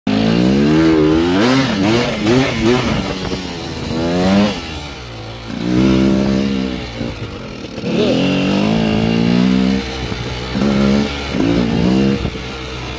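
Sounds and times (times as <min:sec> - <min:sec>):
dirt bike engine revving: 0:00.1 - 0:12.9.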